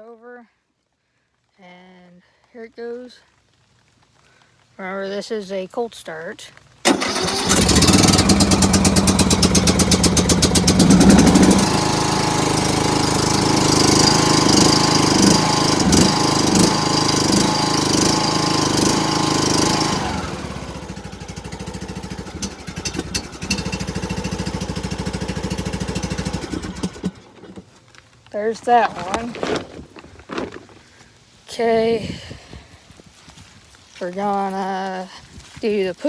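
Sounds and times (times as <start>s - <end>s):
lawnmower engine running: 6.8s - 31.0s.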